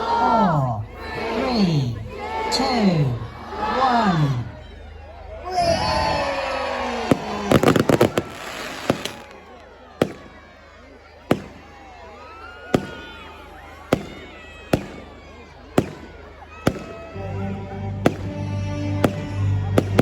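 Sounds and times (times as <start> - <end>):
fireworks crackling bangs: 7.0 - 10.5, 11.2 - 11.8, 12.7 - 17.2, 18.0 - 18.4, 19.0 - 20.0
sharp firework bangs: 7.1 - 9.4, 11.3 - 11.7, 13.9 - 15.2, 15.8 - 17.1.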